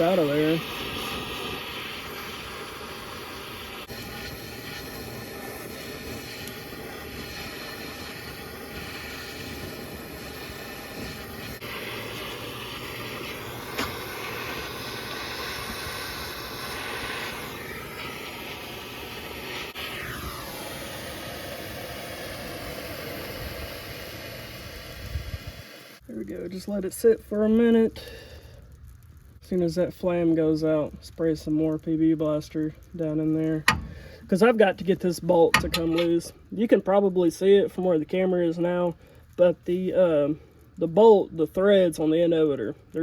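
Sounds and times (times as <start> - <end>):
hand torch hissing: 0.0 - 26.0, 33.5 - 36.5.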